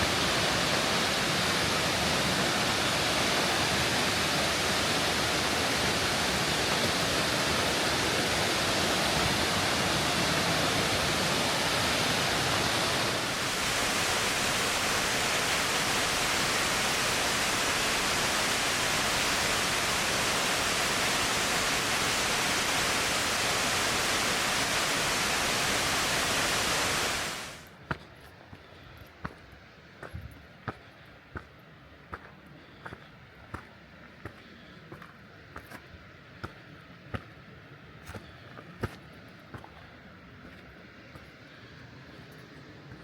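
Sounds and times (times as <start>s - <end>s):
river flowing: 0.0s - 43.0s.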